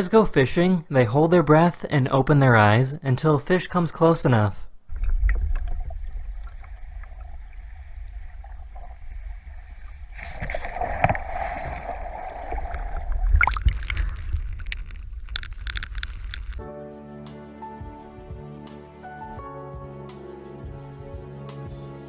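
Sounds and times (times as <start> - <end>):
low rumble: 4.7 - 10.3
water gurgling and sloshing: 4.7 - 16.6
sharp splashy clicks: 13.3 - 16.6.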